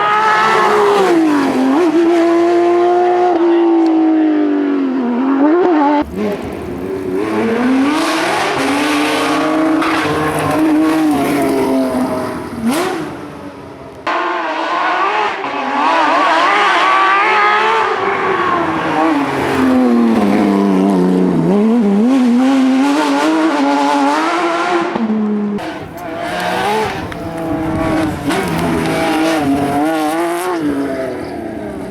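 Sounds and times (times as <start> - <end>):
sports car engine revving: 18.9 - 31.8.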